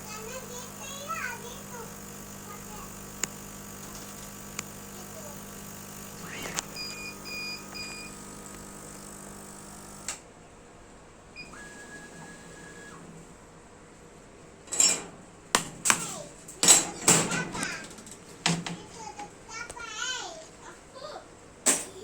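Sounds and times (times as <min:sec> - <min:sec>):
child calling out: 0:00.0 - 0:03.0, 0:04.9 - 0:05.4
electrical hum: 0:00.0 - 0:10.2, 0:11.2 - 0:20.0
electronic beeps: 0:06.2 - 0:08.2.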